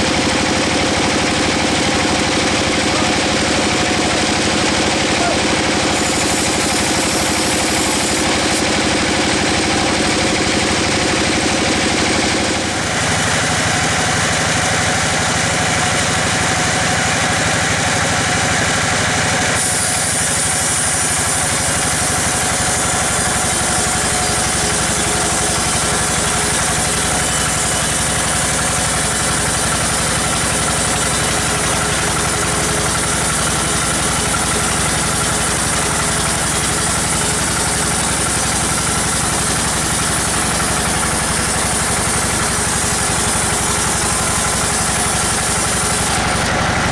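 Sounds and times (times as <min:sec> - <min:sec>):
sawmill saw cutting log: 0:00.0 - 0:46.9.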